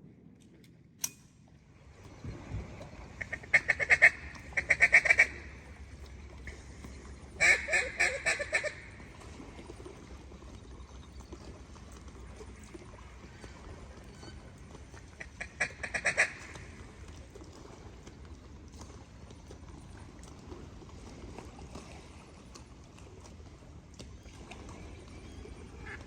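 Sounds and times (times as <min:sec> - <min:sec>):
duck quacking rapidly: 0:03.2 - 0:05.4, 0:07.4 - 0:08.8, 0:15.2 - 0:16.5.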